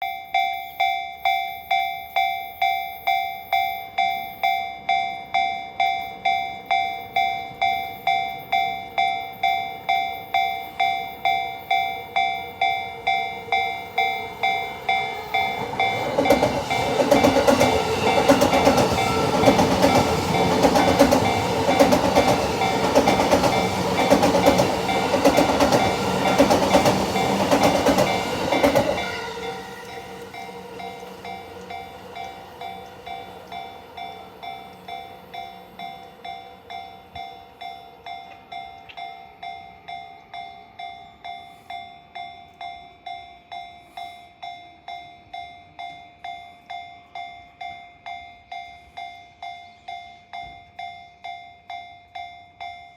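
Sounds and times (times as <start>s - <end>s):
level-crossing alarm bell: 0.0s - 52.9s
train wheels clacking: 11.8s - 37.3s.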